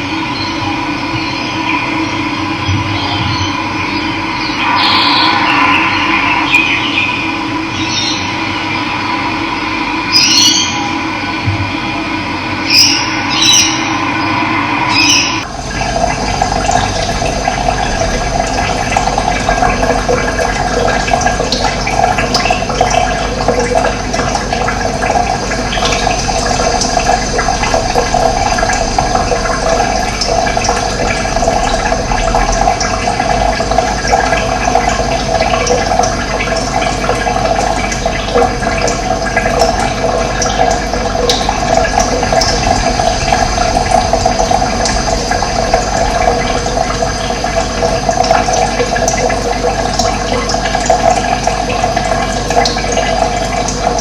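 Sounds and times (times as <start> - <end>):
running water: 0.0 - 54.0.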